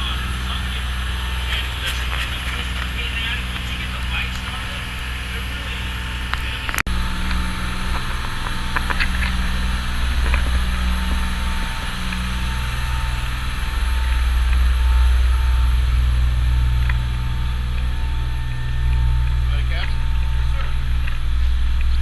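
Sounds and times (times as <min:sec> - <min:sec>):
boat engine drone: 0:00.0 - 0:22.0.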